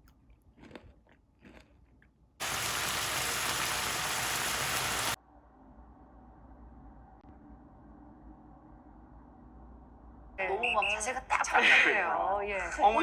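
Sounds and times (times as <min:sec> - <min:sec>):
crunching bites of food: 0:00.0 - 0:02.2
loud steady hiss: 0:02.4 - 0:05.2.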